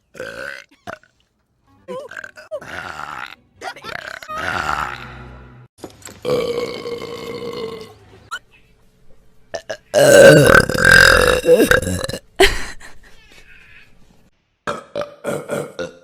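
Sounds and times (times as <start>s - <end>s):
woman belching: 0.2s - 1.1s, 1.9s - 5.0s, 6.3s - 7.9s, 9.6s - 12.2s, 14.7s - 16.0s.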